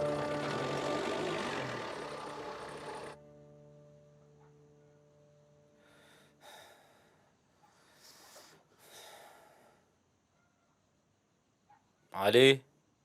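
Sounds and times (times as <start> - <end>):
held music chord: 0.0 - 4.2
slow airy breathing: 5.7 - 10.0.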